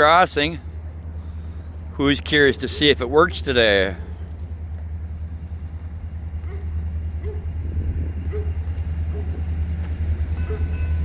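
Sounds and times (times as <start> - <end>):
car engine rumble inside cabin: 0.0 - 10.6.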